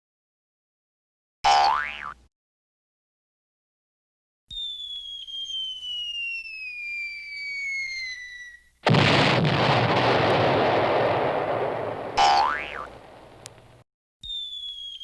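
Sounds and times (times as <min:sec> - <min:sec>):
short rising whistle: 0:04.5 - 0:08.6
falling whistle: 0:04.5 - 0:11.9, 0:14.2 - 0:15.0
loud explosion: 0:08.9 - 0:13.8.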